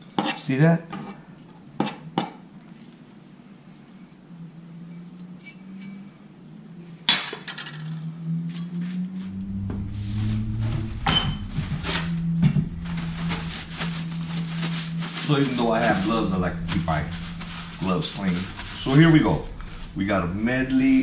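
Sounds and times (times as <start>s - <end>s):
steady low hum: 9.0s - 21.0s.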